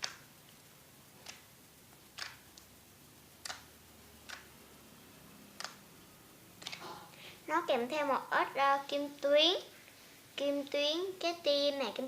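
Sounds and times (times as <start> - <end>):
sharp clicks and pops: 0.0 - 2.7, 3.4 - 4.5, 5.6 - 5.8, 6.6 - 6.8.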